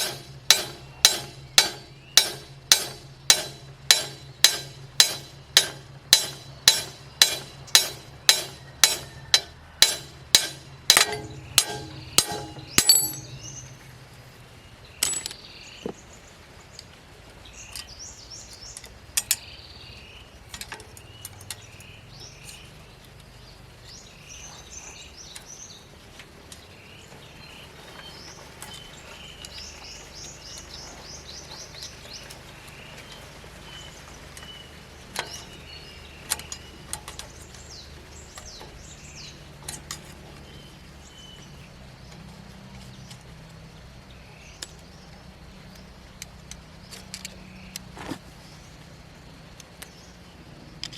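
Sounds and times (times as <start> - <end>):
metal clicks: 0.0 - 13.6, 15.0 - 15.4, 45.7 - 48.2
hammer striking metal: 0.0 - 13.7, 15.0 - 15.4
birds chirping: 0.0 - 50.9.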